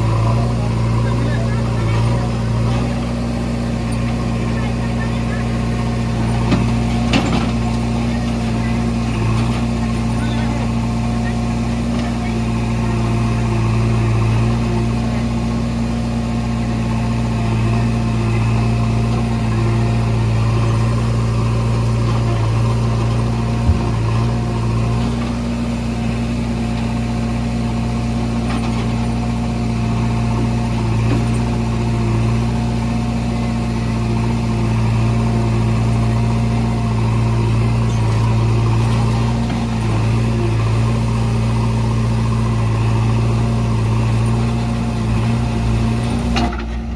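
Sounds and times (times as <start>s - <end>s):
backhoe diesel engine running: 0.0s - 46.9s
short knock: 23.6s - 24.1s.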